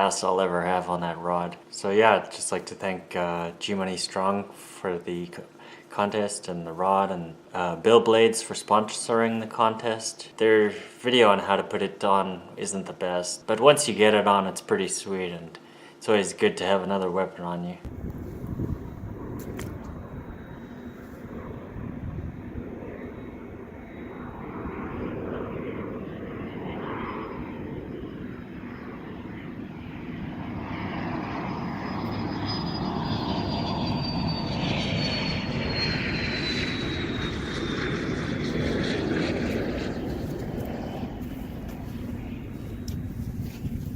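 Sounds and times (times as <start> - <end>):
airplane engine rumble: 17.8 - 43.9
high whine dropping in pitch: 17.9 - 29.5, 30.4 - 43.9.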